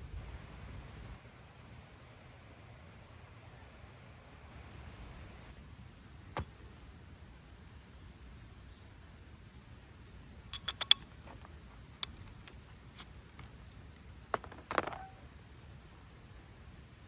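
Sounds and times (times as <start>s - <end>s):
faint high insect drone: 0.0s - 17.0s.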